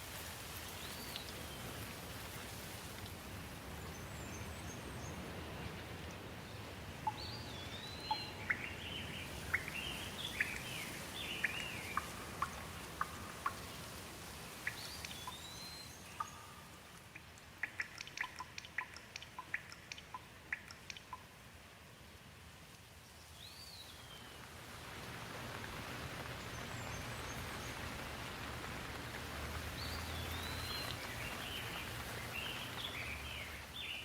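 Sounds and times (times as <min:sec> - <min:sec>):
rain falling: 0:00.0 - 0:34.0
water drips ticking: 0:00.4 - 0:02.0, 0:06.9 - 0:21.5, 0:24.1 - 0:34.0
birds chirping: 0:07.1 - 0:13.9, 0:29.7 - 0:34.0.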